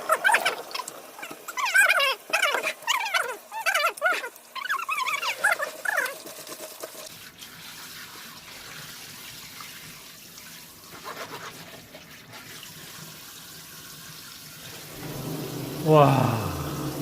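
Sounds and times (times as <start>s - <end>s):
water rushing: 14.6s - 17.0s.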